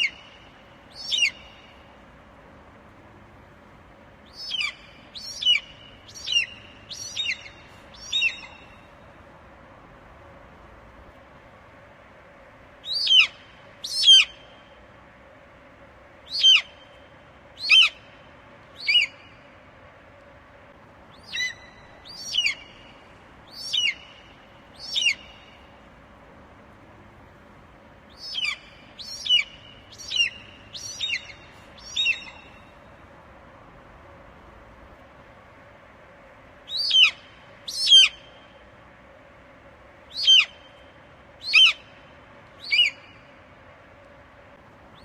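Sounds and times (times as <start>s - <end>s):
faint steady hum: 0.0s - 45.0s
eagle calling: 1.0s - 1.7s, 4.3s - 8.8s, 12.8s - 14.4s, 18.8s - 19.3s, 21.1s - 24.2s, 24.8s - 25.5s, 28.1s - 32.6s, 36.7s - 38.4s, 40.1s - 40.7s, 41.4s - 41.9s, 42.6s - 43.2s.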